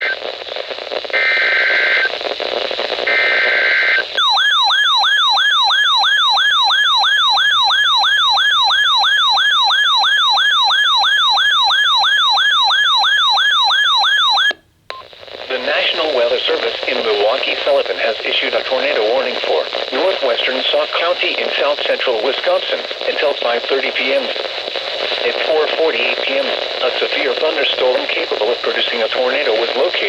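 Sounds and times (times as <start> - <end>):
radio hiss: 0.0 - 4.2, 14.9 - 30.0
warbling alert siren: 4.2 - 14.6.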